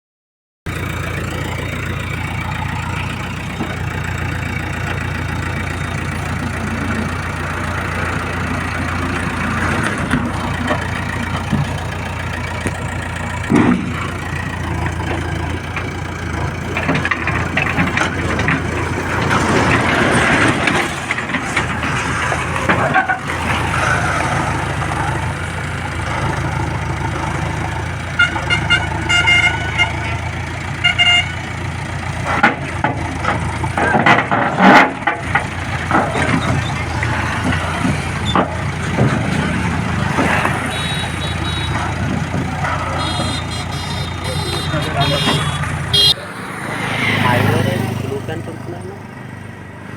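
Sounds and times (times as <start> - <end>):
diesel engines running: 0.7 - 49.9
road noise: 0.7 - 49.9
vehicle horn toots: 28.2 - 31.5, 40.2 - 46.4.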